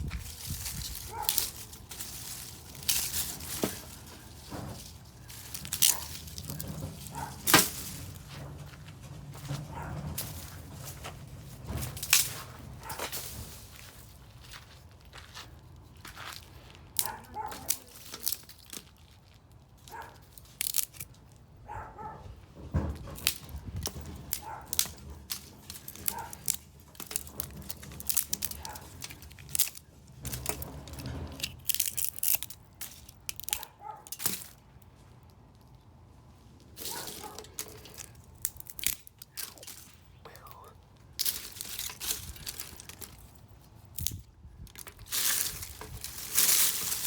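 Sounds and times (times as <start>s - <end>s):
branches snapping and cracking: 0.0s - 8.4s, 11.8s - 13.8s, 17.0s - 21.4s, 23.2s - 35.6s, 36.8s - 47.0s.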